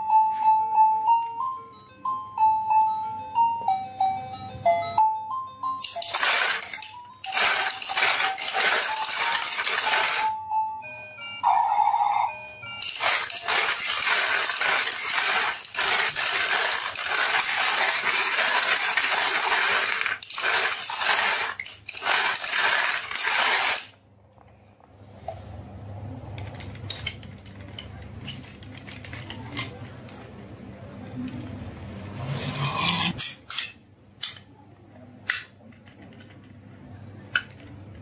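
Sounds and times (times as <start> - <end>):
marbles rolling and clattering: 5.8 - 10.3, 12.8 - 24.0.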